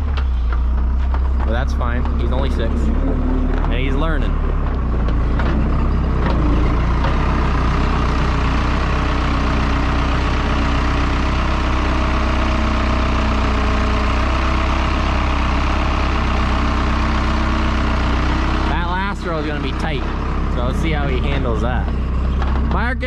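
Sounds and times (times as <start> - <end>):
skid steer engine droning: 0.0 - 23.0.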